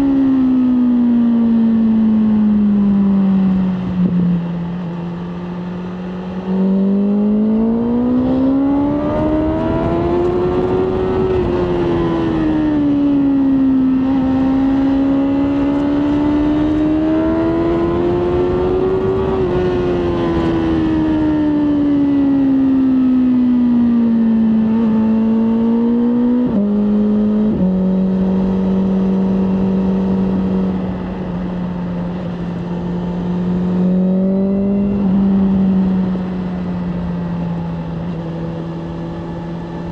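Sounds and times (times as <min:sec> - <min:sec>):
motorcycle engine revving: 0:00.0 - 0:39.9
wind rush: 0:08.1 - 0:12.9.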